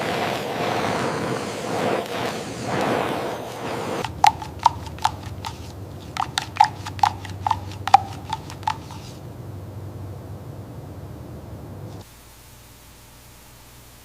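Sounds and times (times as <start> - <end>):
faint steady hum: 0.0 - 14.0
sharp ringing taps: 4.0 - 9.0.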